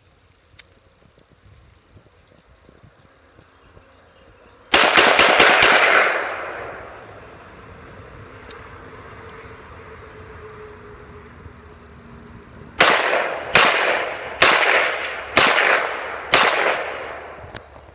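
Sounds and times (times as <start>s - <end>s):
rifle shots with echo: 4.7s - 6.8s, 12.8s - 17.4s.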